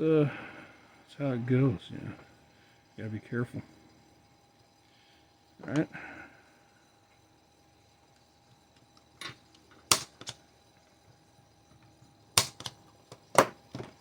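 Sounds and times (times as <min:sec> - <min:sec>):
punch-down tool snapping: 0:09.9 - 0:10.4, 0:12.4 - 0:12.8.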